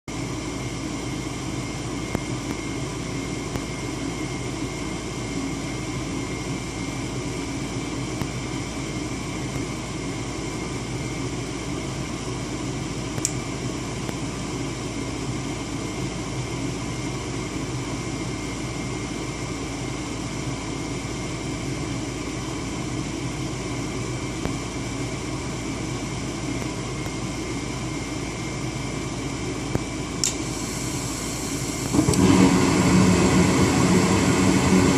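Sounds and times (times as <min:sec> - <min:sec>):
furnace blower hum: 0:00.0 - 0:34.9
whining tones: 0:30.2 - 0:34.9.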